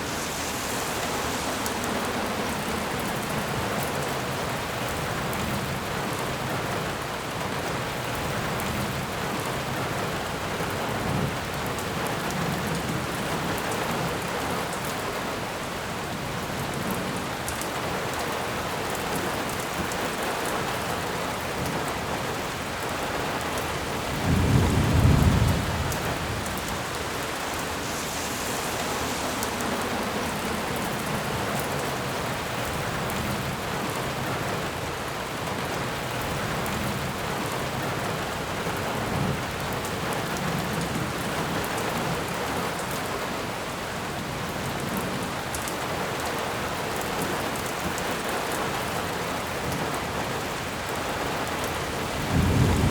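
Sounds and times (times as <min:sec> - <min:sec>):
low rumble: 0:00.0 - 0:05.1, 0:24.8 - 0:33.7
rain falling: 0:00.0 - 0:52.9.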